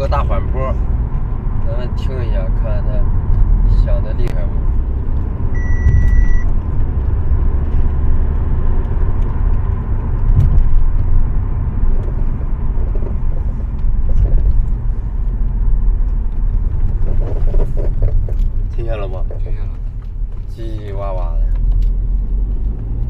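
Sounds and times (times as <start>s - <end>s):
road and tyre rumble: 0.0s - 23.0s
suspension creaking: 0.0s - 23.0s
suspension knock: 8.7s - 11.3s.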